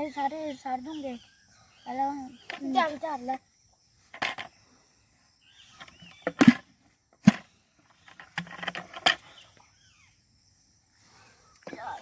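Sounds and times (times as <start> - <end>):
rustling and scraping: 4.0 - 4.6, 5.7 - 9.5.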